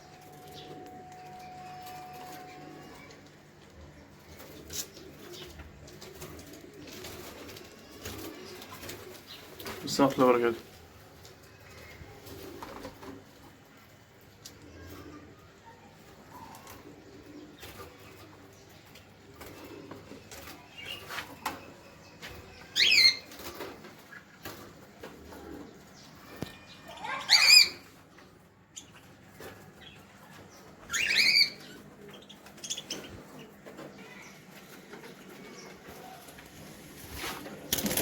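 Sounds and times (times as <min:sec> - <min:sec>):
birds flapping wings: 0:04.4 - 0:11.4, 0:34.5 - 0:38.0
shrill bird calls: 0:26.4 - 0:27.9, 0:30.9 - 0:31.8
rustles and clicks: 0:31.8 - 0:38.0.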